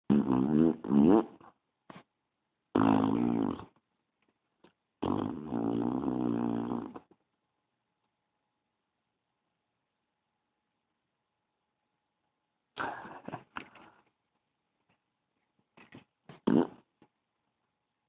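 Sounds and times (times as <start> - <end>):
baby passing gas: 16.3 - 16.8.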